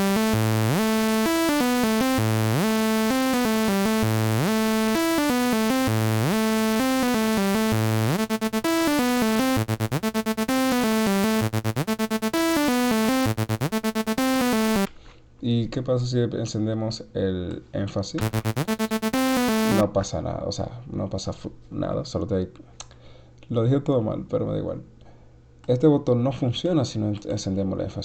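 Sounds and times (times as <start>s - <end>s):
electronic dance music: 0.0s - 14.9s, 18.2s - 19.8s
sliding bassline: 0.0s - 14.9s, 18.2s - 19.8s
stuttering synth notes: 0.0s - 14.9s, 18.2s - 19.8s.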